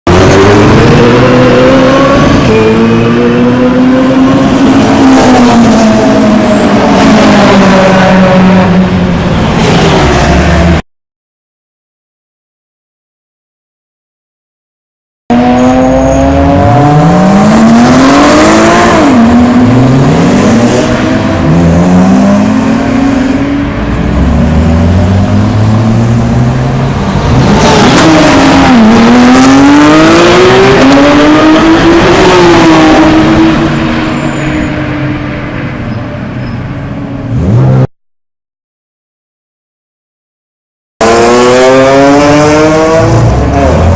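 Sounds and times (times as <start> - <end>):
race cars accelerating: 0.1 - 10.8, 15.3 - 35.5, 41.0 - 43.9.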